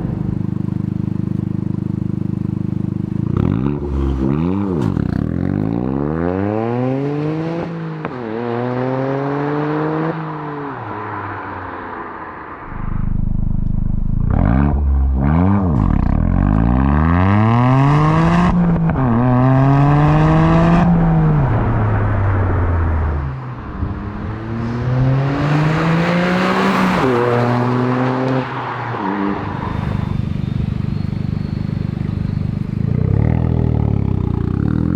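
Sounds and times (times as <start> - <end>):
car engine accelerating hard: 3.0 - 7.7, 12.6 - 34.9.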